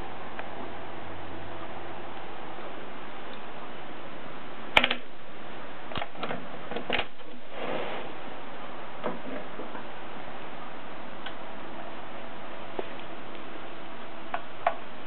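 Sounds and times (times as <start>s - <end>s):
steady hiss: 0.0s - 15.0s
rustle: 5.9s - 8.6s.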